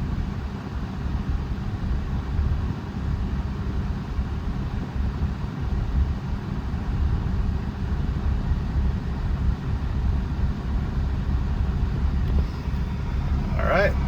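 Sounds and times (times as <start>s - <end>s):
car air conditioning blower: 10.4s - 14.0s.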